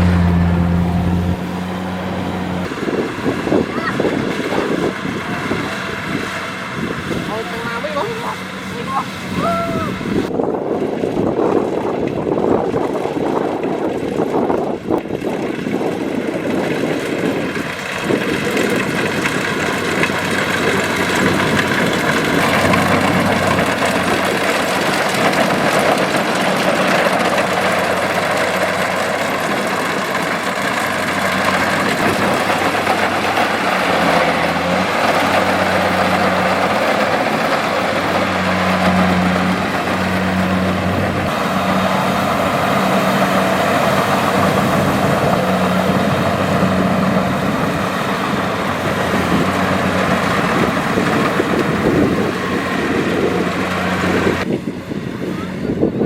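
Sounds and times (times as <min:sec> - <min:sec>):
combine harvester diesel engine: 0:00.0 - 0:56.0.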